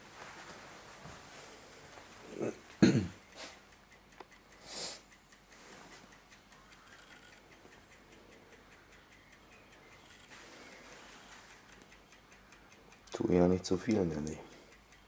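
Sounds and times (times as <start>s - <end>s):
clock ticking: 0.7s - 15.0s
short hiss: 4.6s - 5.1s.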